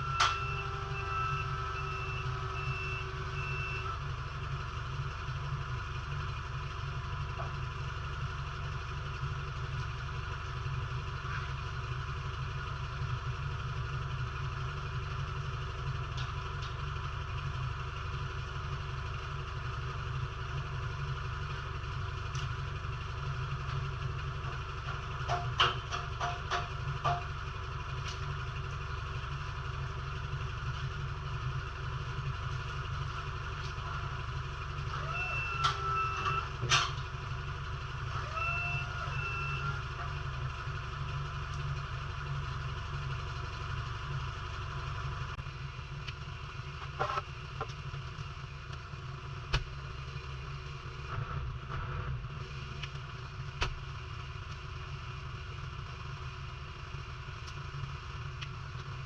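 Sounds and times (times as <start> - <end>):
reversing alarm beeps: 0.0 - 4.0, 35.0 - 36.6, 38.1 - 40.2
vehicle engine running: 0.0 - 59.0
sharp metallic knocks: 25.3 - 27.4.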